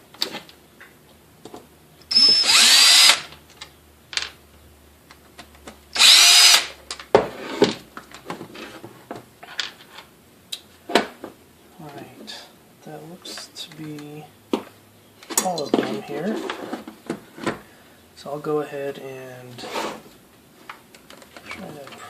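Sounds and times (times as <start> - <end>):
power drill motor whine: 2.1 - 3.3, 6.0 - 6.7.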